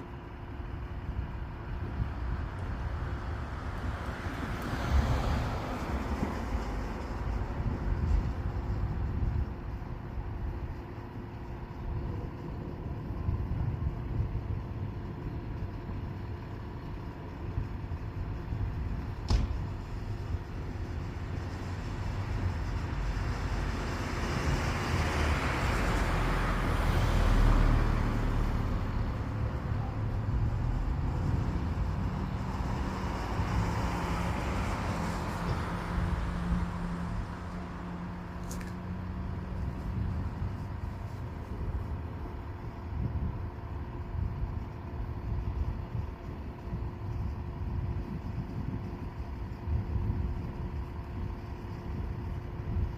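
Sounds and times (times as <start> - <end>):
road traffic passing: 0.0 - 52.9.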